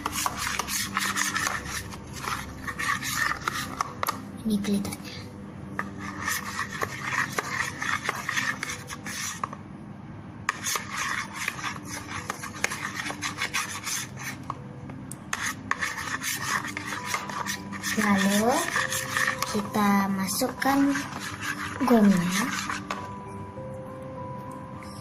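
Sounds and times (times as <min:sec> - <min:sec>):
stirrer scraping container: 0:00.0 - 0:04.2, 0:05.8 - 0:09.6, 0:10.5 - 0:14.6, 0:15.3 - 0:23.2.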